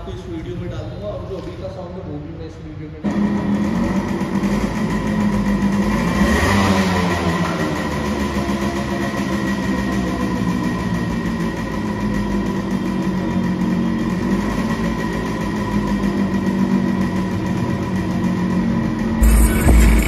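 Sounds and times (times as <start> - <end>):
motorcycle engine idling: 3.1 - 20.0
loud low rumble: 19.2 - 20.0.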